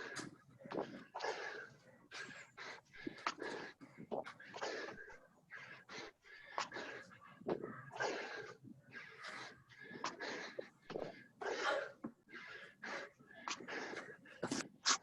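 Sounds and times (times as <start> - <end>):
heavy laboured breathing: 0.0 - 15.0.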